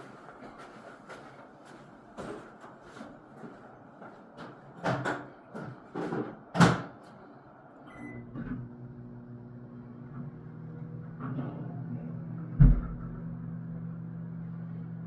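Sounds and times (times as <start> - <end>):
knocks and clatters of kitchenware: 4.4 - 7.0
microwave oven humming: 4.4 - 15.0.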